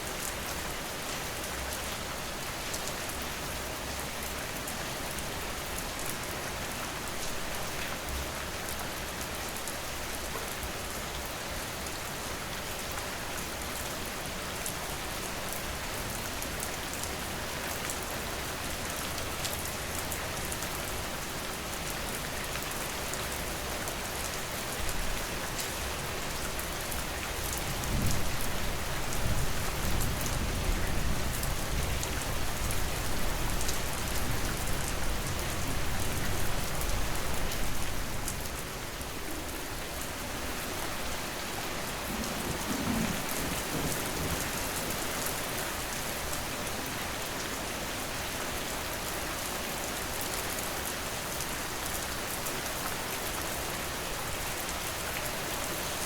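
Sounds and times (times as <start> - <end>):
steady rain falling: 0.0 - 56.0
deep rumble of thunder: 27.6 - 33.4, 41.8 - 45.5.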